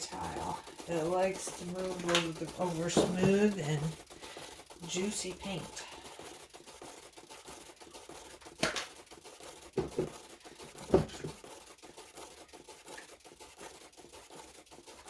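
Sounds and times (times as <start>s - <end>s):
small objects clacking: 0.0s - 6.8s, 8.2s - 11.5s.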